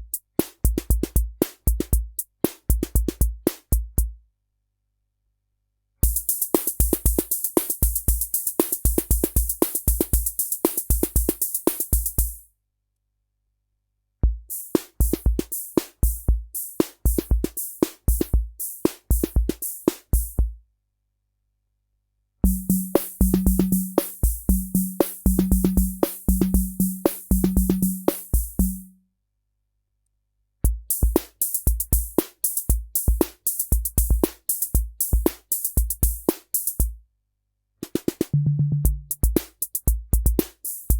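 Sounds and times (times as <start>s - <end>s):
drum machine rhythm: 0.0s - 4.1s, 6.0s - 12.4s, 14.2s - 20.6s, 22.4s - 28.9s, 30.6s - 37.0s, 37.8s - 40.9s
low pitched drum tone: 22.4s - 28.9s, 38.4s - 39.4s.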